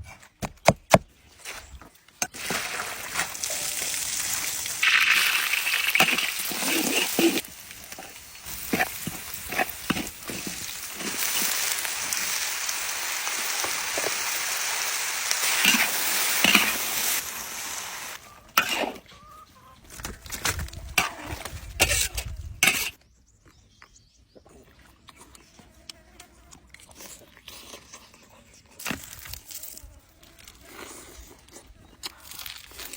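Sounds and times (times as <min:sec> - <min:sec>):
fish sizzling in a pan: 0:02.3 - 0:18.8.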